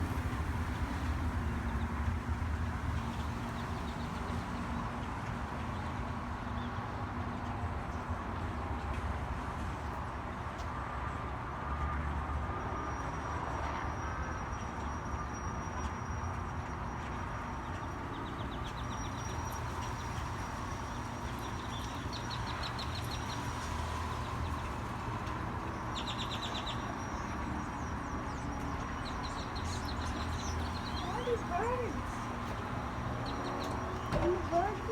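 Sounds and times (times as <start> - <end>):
birds chirping and calling: 25.9 - 34.9.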